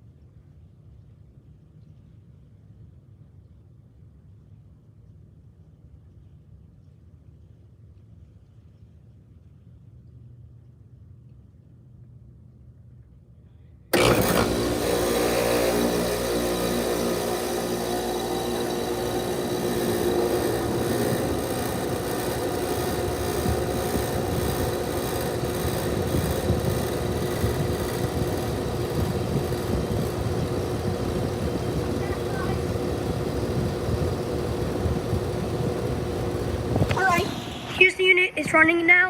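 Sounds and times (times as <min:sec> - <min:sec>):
air conditioner compressor humming: 0:13.9 - 0:39.0.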